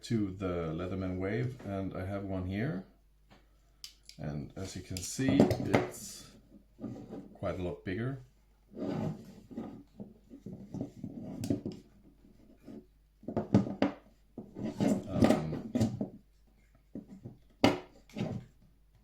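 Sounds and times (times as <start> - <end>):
multitools rubbing and scraping: 8.7 - 12.9, 14.4 - 16.0.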